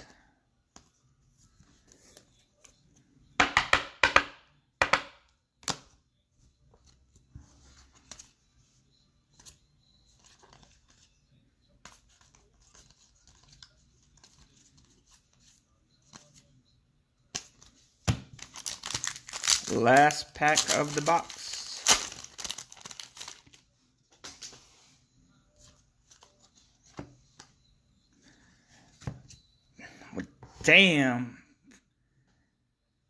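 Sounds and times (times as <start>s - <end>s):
wrapper crinkling and rustling: 18.4s - 23.6s
foil pack ripping: 18.5s - 23.4s.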